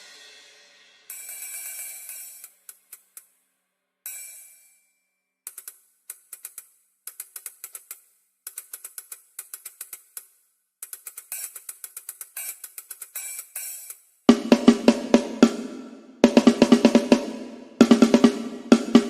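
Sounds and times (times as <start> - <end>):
cymbal hit: 0.0 - 2.4.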